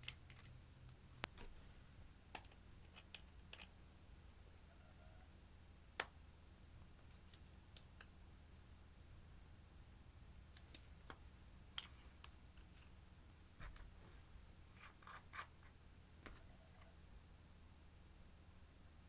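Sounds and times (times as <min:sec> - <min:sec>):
small objects clicking and scratching: 0:00.0 - 0:01.4, 0:02.3 - 0:03.8, 0:14.7 - 0:15.8.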